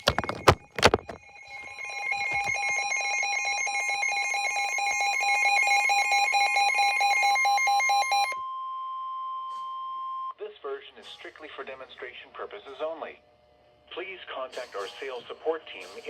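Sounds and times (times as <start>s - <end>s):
two-tone emergency alert signal: 0.0s - 10.3s.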